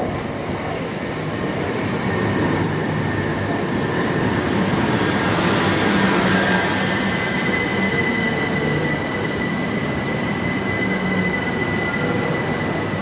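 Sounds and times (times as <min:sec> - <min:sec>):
high train whine: 0:00.0 - 0:13.0
train rumbling past: 0:00.0 - 0:13.0.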